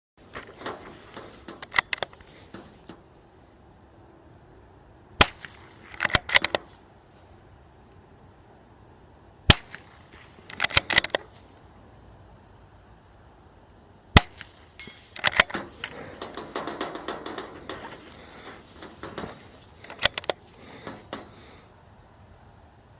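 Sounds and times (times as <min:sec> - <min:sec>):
rifle bolt clicks: 0:00.6 - 0:02.3, 0:05.2 - 0:06.7, 0:09.5 - 0:11.4, 0:14.2 - 0:21.3
rifle shots: 0:05.2 - 0:06.6, 0:09.5 - 0:11.3, 0:14.2 - 0:17.8.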